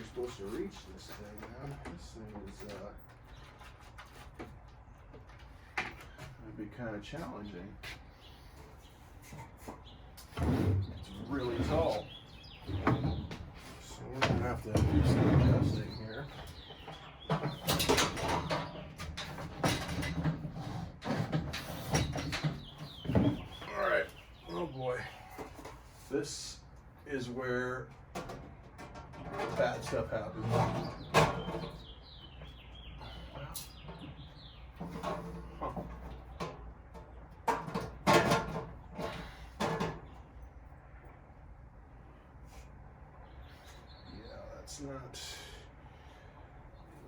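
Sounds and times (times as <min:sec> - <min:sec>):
metal heater parts clattering: 0:00.0 - 0:04.7, 0:10.2 - 0:26.0, 0:28.0 - 0:40.5
metal parts knocking and rattling: 0:14.2 - 0:23.6.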